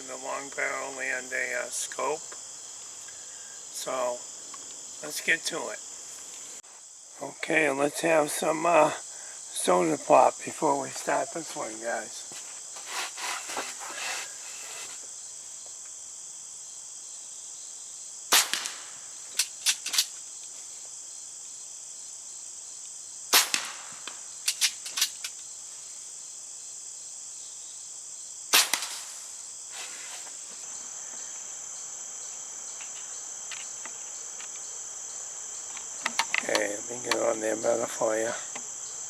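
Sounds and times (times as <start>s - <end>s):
crickets chirring: 0.0s - 39.0s
air pistol shots cracking: 18.3s - 20.1s, 23.3s - 25.2s, 28.5s - 29.4s.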